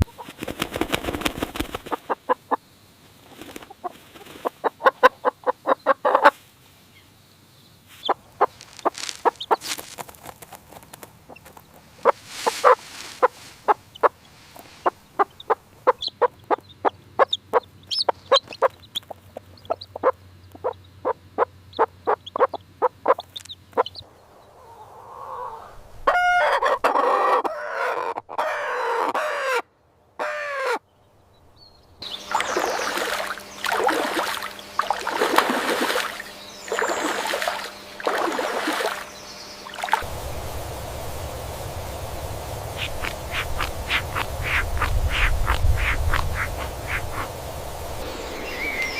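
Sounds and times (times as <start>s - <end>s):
chickens clucking: 0.0s - 6.4s, 8.0s - 10.0s, 10.7s - 24.0s, 24.6s - 29.2s, 32.0s - 40.1s, 42.7s - 47.4s
downward sweeping calls: 7.9s - 10.0s, 11.9s - 16.2s, 32.0s - 48.9s
harsher bird calls: 12.0s - 27.0s, 32.0s - 40.2s, 42.5s - 48.9s.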